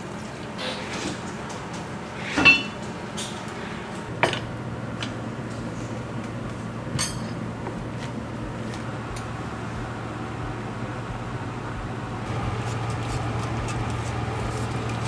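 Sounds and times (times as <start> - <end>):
kitchenware clinking: 0.4 - 5.2, 6.9 - 8.2
steady low hum: 2.0 - 15.0.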